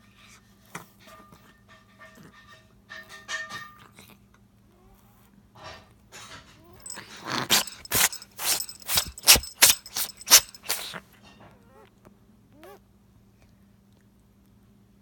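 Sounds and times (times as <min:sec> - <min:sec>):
kitten sneezing: 0:06.8 - 0:11.0.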